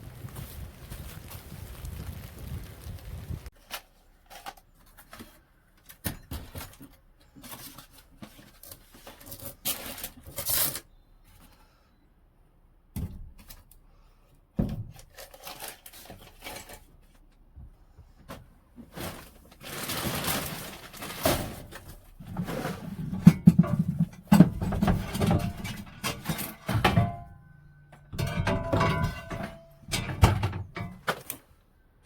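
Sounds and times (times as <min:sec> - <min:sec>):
objects knocking and clattering: 0:18.2 - 0:31.5
objects thudding: 0:18.2 - 0:31.5.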